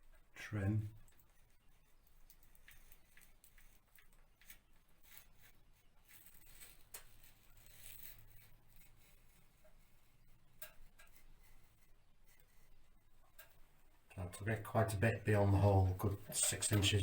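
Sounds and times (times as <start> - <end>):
blade scratching through wallpaper: 1.1 - 13.9, 15.3 - 17.0.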